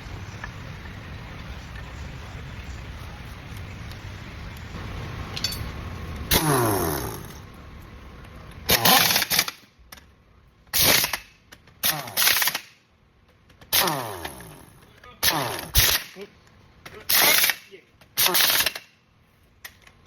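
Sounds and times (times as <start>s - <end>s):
air impact wrench bursts: 6.3s - 7.4s, 8.6s - 9.7s, 10.7s - 12.8s, 13.6s - 16.3s, 17.0s - 19.0s.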